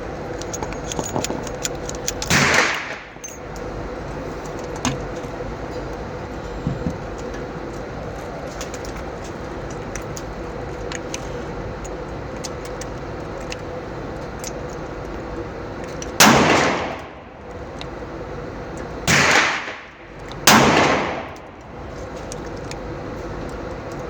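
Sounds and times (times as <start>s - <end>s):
pistol shot echoing: 2.3s - 3.0s, 16.2s - 17.0s, 19.1s - 19.9s, 20.5s - 21.4s.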